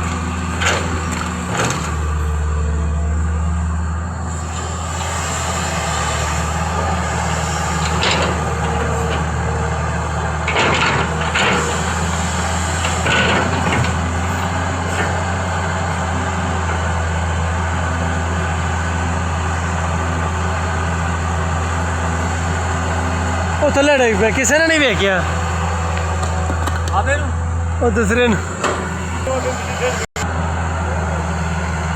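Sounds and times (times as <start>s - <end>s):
diesel engine running: 0.0s - 31.9s
rough scraping knocks: 28.0s - 29.4s.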